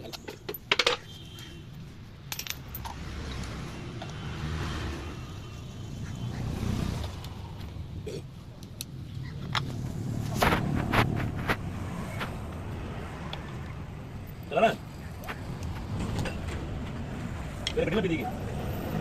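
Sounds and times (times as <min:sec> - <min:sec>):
metal tools clinking: 0:00.0 - 0:01.1, 0:02.2 - 0:03.4.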